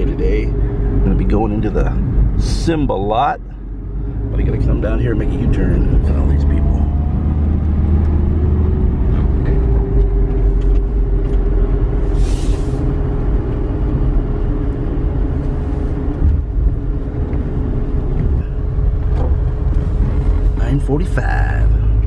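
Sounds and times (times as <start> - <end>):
car engine and road rumble: 0.0 - 22.0
brief hiss: 12.1 - 12.9.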